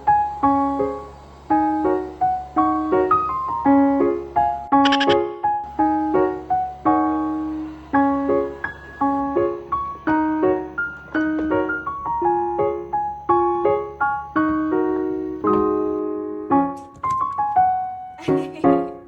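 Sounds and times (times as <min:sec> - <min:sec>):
piano melody: 0:00.0 - 0:19.0.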